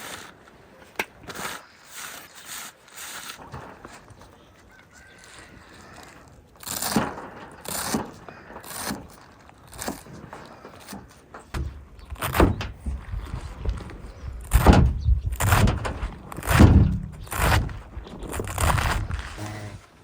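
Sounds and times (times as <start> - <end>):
dull knocks and scraping thuds: 9.8 - 20.0.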